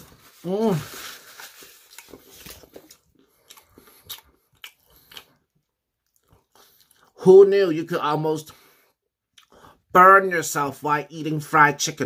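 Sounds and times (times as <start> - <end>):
fried chicken crunching: 1.6 - 7.0.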